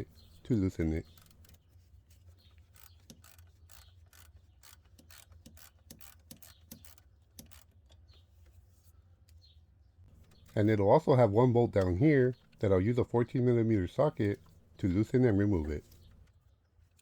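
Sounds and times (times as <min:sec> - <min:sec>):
socket ratchet clicking: 0:02.8 - 0:08.0.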